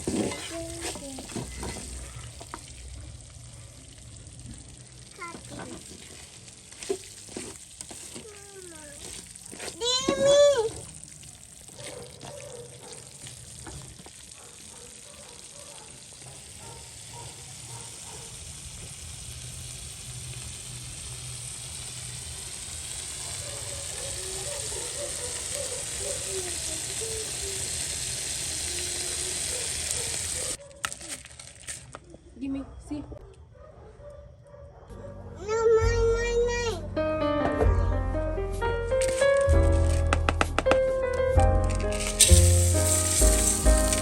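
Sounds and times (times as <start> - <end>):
food sizzling in hot oil: 0.0 - 30.6, 41.6 - 44.0.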